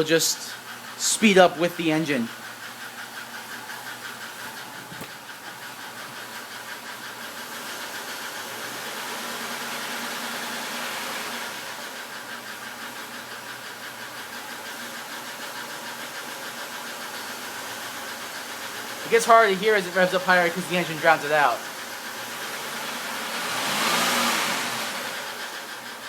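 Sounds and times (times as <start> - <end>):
rhythmic engine ticking: 0.0 - 26.0
car engine revving: 17.4 - 26.0.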